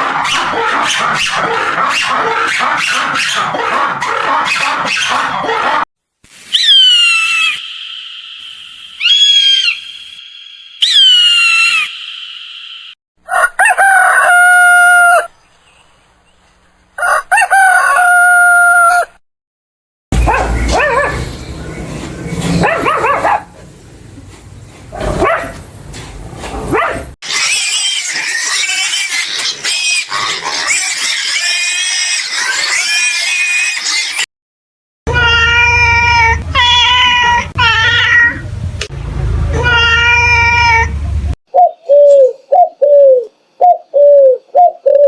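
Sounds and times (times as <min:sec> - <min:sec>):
animal calls: 0:00.0 - 0:05.8, 0:06.6 - 0:10.1, 0:10.8 - 0:12.4
rooster crowing: 0:13.2 - 0:15.3, 0:17.0 - 0:19.2.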